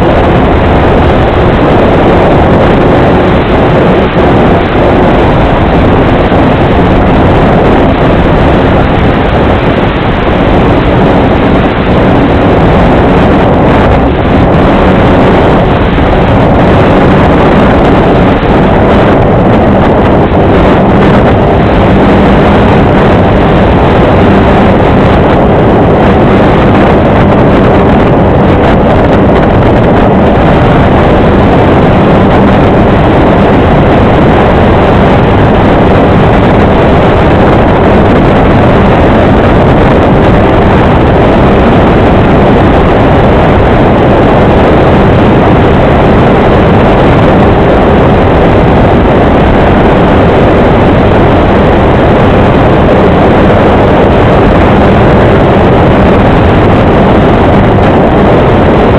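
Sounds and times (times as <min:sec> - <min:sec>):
wind rushing on microphone: 0:00.0 - 0:58.9.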